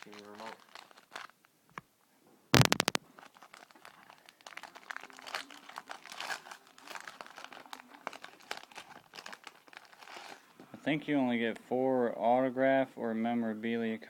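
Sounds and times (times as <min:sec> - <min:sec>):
card pack wrapper crinkling: 0:00.0 - 0:01.4, 0:02.6 - 0:10.4.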